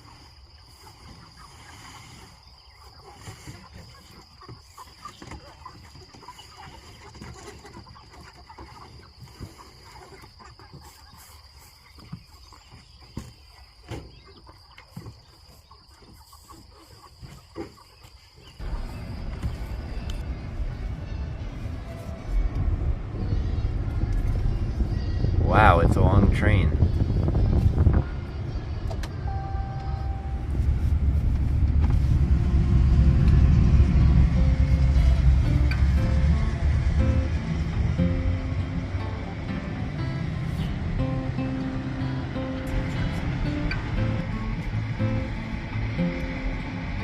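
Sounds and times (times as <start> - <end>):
chickens clucking: 0.0 - 47.0
train rumbling past: 18.6 - 47.0
train wheel squeal: 28.6 - 30.9.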